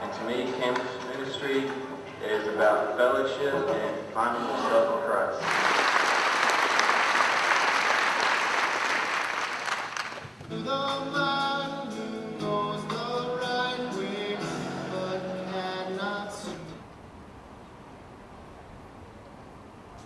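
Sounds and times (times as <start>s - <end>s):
applause: 5.4s - 10.4s
group singing: 10.5s - 16.8s.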